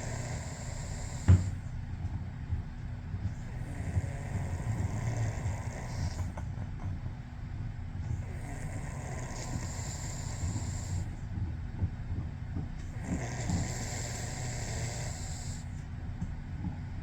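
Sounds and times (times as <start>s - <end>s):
person snoring: 0.0s - 1.6s, 13.0s - 15.7s.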